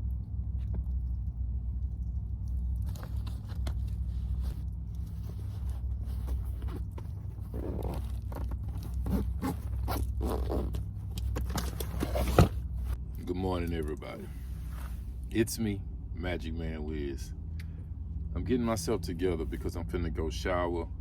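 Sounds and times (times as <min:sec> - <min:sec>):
low hum: 0:00.0 - 0:21.0
clothes and bags rustling: 0:02.6 - 0:13.0, 0:13.8 - 0:15.3
zipper: 0:04.2 - 0:12.6.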